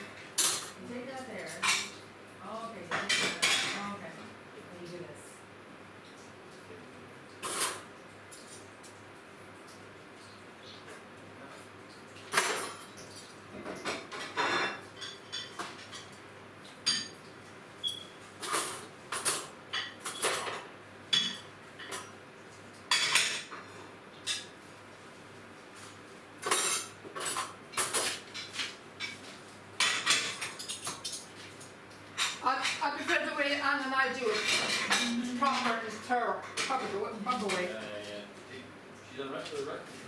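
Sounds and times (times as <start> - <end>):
dishes and cutlery clattering: 0.4 - 0.8, 2.9 - 3.9, 7.4 - 8.6, 12.3 - 17.2, 17.8 - 22.2, 22.9 - 24.6, 26.4 - 31.6, 34.2 - 37.8.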